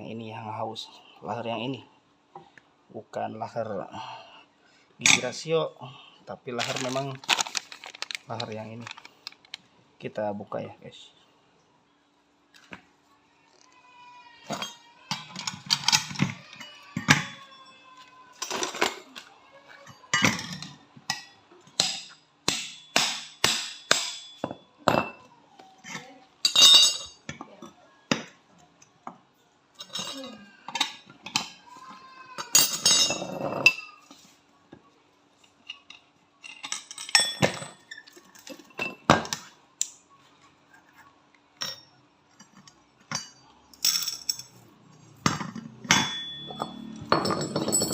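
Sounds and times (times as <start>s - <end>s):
metallic clinks and knocks: 14.5s - 17.8s, 25.9s - 27.2s, 29.8s - 31.6s, 32.4s - 33.9s, 41.6s - 44.6s, 45.2s - 47.9s.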